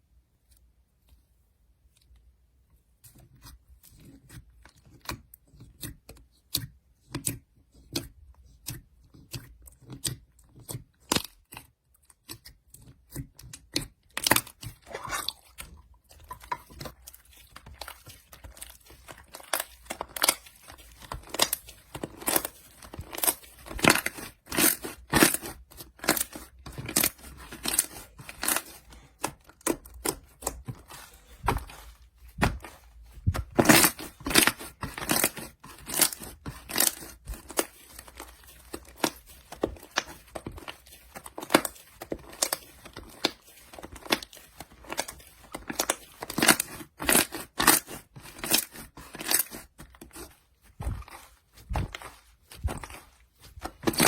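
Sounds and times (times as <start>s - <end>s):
crisp crunching and tearing: 16.4s - 54.0s.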